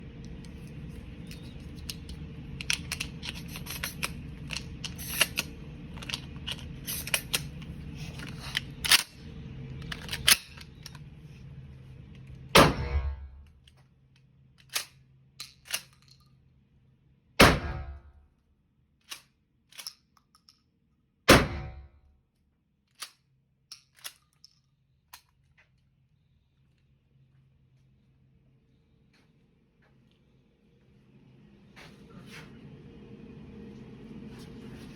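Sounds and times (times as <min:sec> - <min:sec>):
steady hum: 0:00.0 - 0:13.7, 0:26.2 - 0:34.9
clicks and sharp cracks: 0:09.8 - 0:11.1
shotgun blasts: 0:12.6 - 0:13.4, 0:17.4 - 0:18.1, 0:21.3 - 0:21.9.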